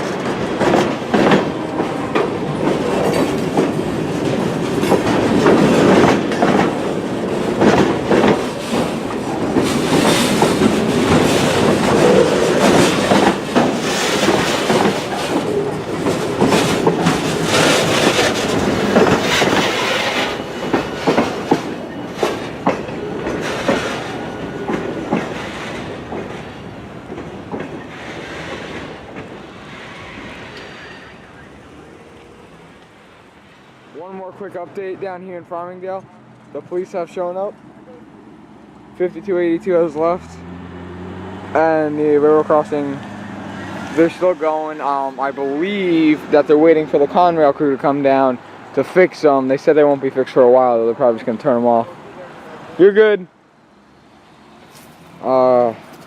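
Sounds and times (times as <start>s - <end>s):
train wheels clacking on rail joints: 0.0s - 31.5s.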